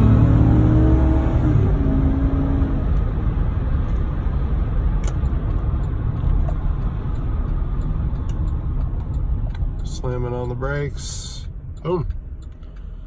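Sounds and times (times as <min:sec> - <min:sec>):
car engine drone: 0:00.0 - 0:13.0
road and tyre rumble: 0:00.0 - 0:13.0.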